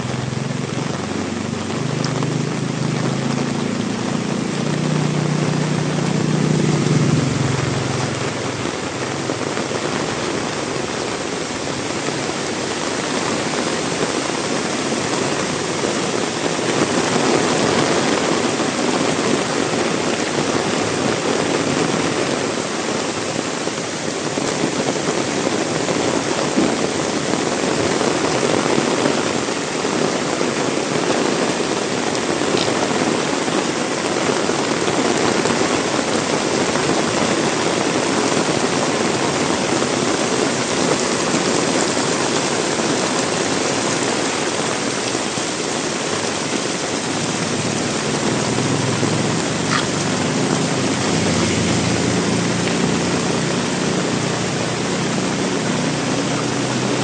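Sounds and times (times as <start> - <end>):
vehicle engine humming: 0.0 - 16.2, 45.0 - 57.0
heavy rain splashing: 0.0 - 57.0.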